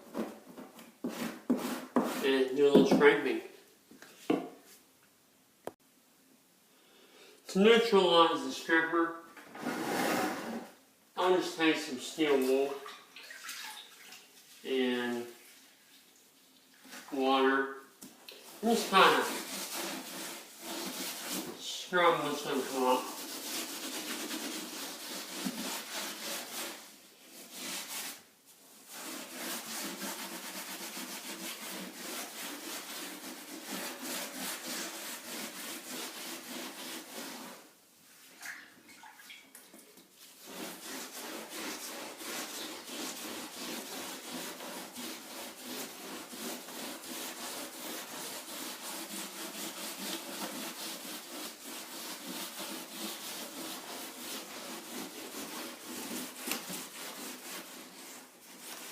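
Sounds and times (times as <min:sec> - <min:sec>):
steel wool scrubbing wood floor: 0:01.0 - 0:03.5, 0:09.6 - 0:12.9, 0:18.4 - 0:38.3, 0:40.2 - 0:58.9.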